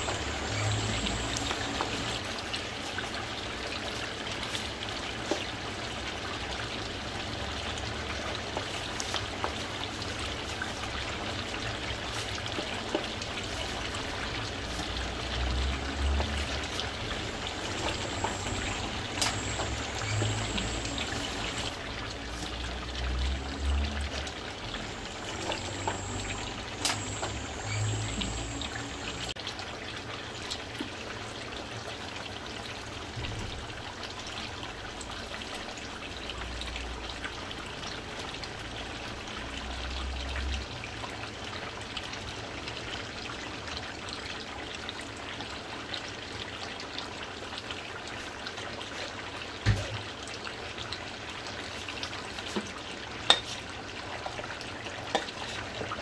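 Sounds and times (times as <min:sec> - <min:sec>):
meat sizzling in a pot: 0:00.0 - 0:29.4, 0:51.0 - 0:56.0.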